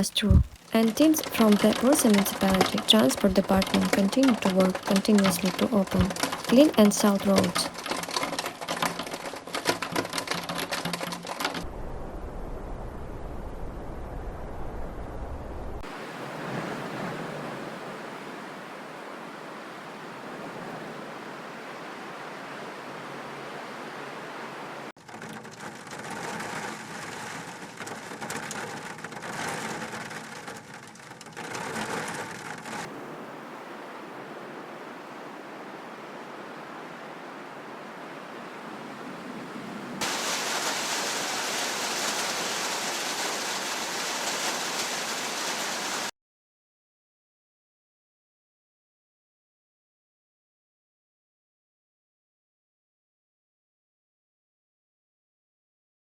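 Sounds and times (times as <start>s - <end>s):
steady rushing weather noise: 0.0s - 24.9s, 32.6s - 46.1s.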